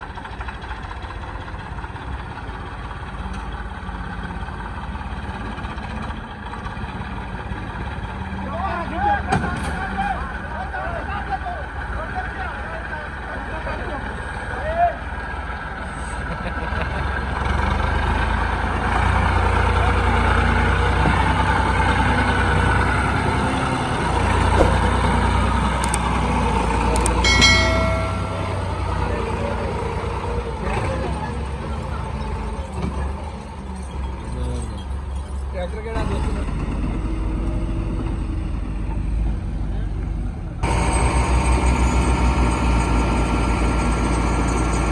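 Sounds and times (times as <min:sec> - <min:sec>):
machine engine rumbling: 0:18.6 - 0:34.9.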